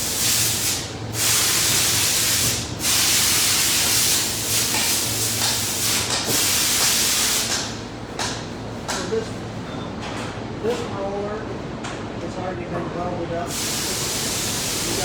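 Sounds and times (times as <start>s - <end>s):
loud rushing hiss: 0.0s - 7.7s, 13.5s - 15.0s.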